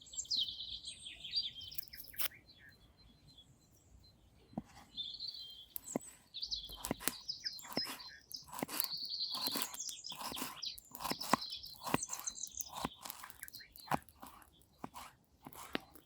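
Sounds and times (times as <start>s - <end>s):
small birds chirping: 0.0s - 16.0s
sharp clicks and crunches: 1.7s - 2.4s, 5.7s - 16.0s.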